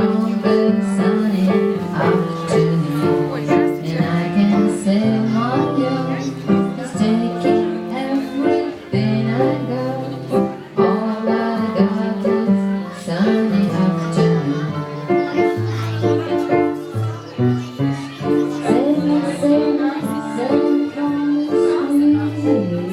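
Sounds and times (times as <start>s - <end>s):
string instruments melody: 0.0s - 22.9s.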